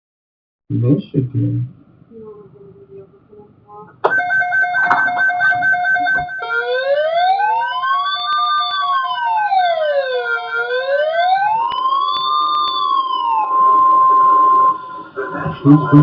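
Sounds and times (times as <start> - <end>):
steady single-pitch alert tone: 4.0 - 9.1, 11.6 - 16.0
electronic siren sweeping: 4.0 - 16.0.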